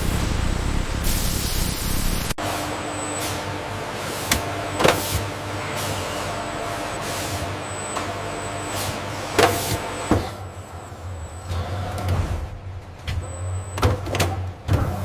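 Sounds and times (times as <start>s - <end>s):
low mechanical hum: 0.0s - 2.4s
thin high whine: 0.0s - 2.4s.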